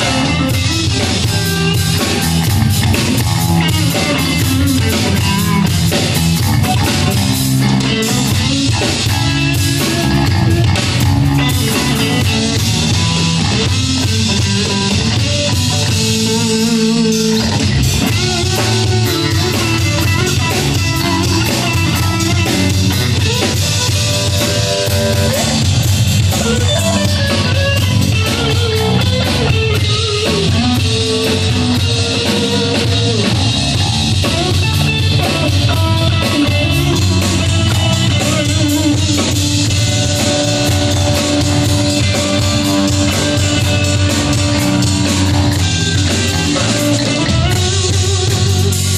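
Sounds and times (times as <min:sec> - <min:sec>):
rock band playing: 0:00.0 - 0:48.9.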